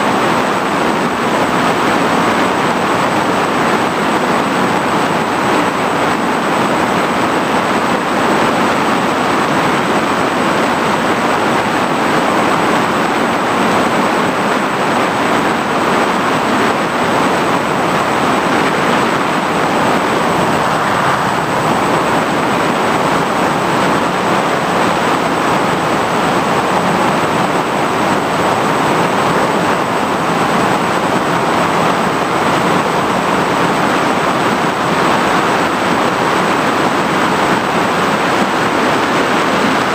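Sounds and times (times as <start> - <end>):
airflow and propeller rushing: 0.0 - 39.9
faint high whine: 0.0 - 39.9.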